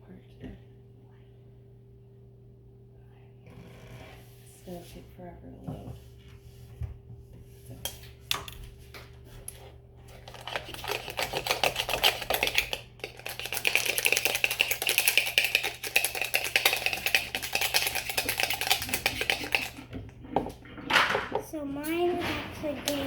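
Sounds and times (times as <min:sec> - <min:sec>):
slime being stirred: 0:07.7 - 0:20.9.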